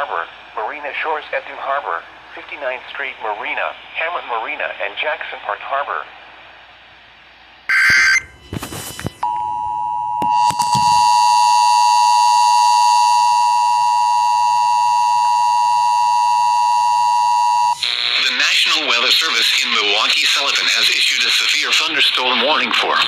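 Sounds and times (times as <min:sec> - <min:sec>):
two-tone alert attention signal: 0:07.7 - 0:08.4
harsh data noise bursts: 0:07.7 - 0:09.2.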